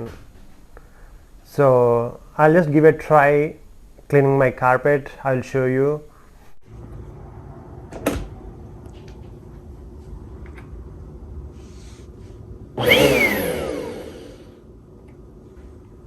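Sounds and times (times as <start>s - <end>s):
vacuum cleaner humming: 12.8s - 14.6s.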